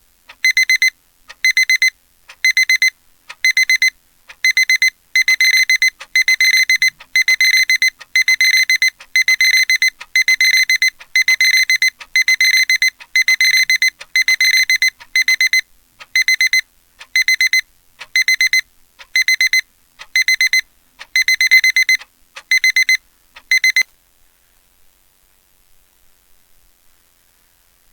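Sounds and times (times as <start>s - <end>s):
alarm clock beeping: 0.4s - 15.6s, 16.2s - 16.6s, 18.2s - 18.6s, 20.2s - 20.6s, 21.2s - 23.8s.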